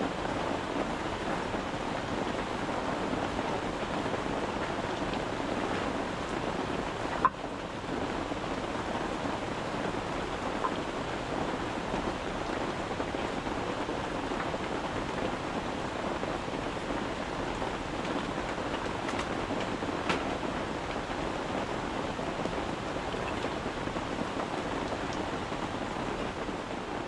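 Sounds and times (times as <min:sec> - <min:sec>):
rain on a tent: 0:00.0 - 0:27.0.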